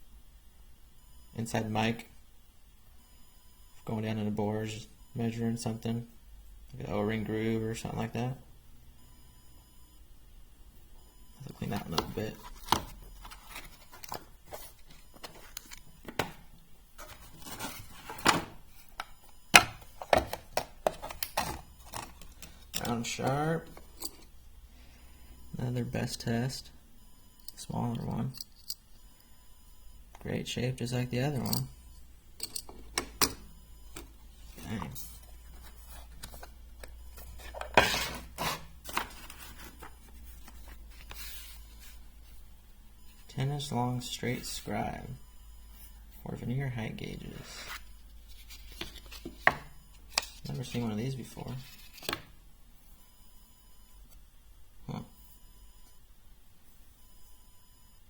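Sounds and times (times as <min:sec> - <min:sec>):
metal tools clicking and knocking: 0:32.4 - 0:33.4.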